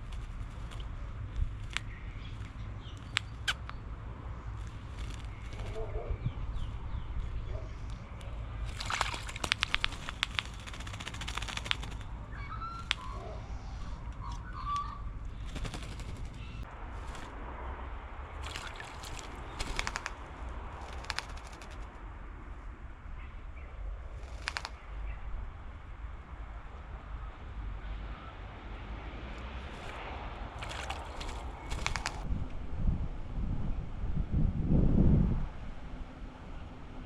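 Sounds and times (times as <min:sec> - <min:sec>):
birds rattling calls: 0:00.0 - 0:17.4, 0:18.4 - 0:21.9, 0:24.2 - 0:25.2, 0:30.6 - 0:32.3
steady low rumble: 0:00.0 - 0:27.8, 0:29.6 - 0:37.0.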